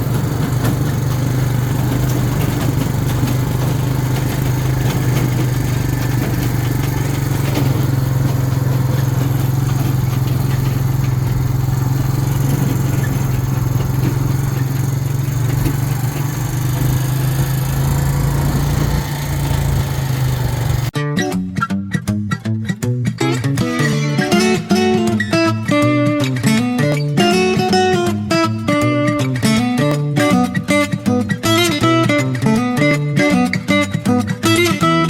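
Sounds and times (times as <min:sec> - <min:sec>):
road noise: 0:00.0 - 0:20.9
farm vehicle engine running: 0:00.0 - 0:21.0.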